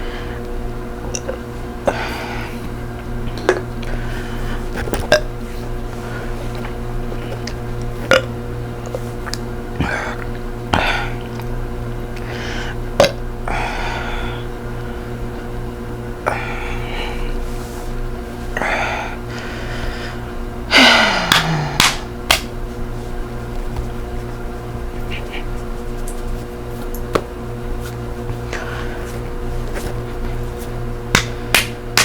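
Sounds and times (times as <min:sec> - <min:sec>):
steady hum: 0:00.0 - 0:32.0
woman burping: 0:05.0 - 0:05.4
breathy gasps: 0:16.2 - 0:17.4, 0:18.6 - 0:22.0
slaps on bare belly: 0:21.2 - 0:22.5, 0:31.1 - 0:32.0.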